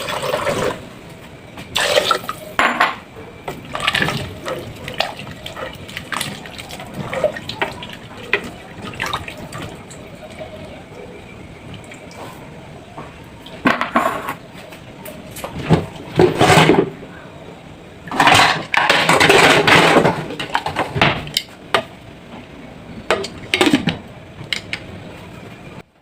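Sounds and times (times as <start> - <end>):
dishes scraping and rattling: 13.7 - 14.4, 18.1 - 21.5
dishes and pots clattering: 18.1 - 21.9.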